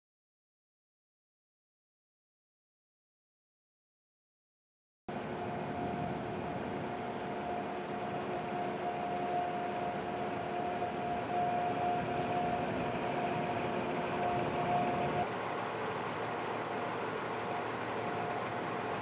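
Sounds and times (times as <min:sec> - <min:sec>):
constant whine: 0:05.1 - 0:19.0
road noise: 0:05.2 - 0:19.0.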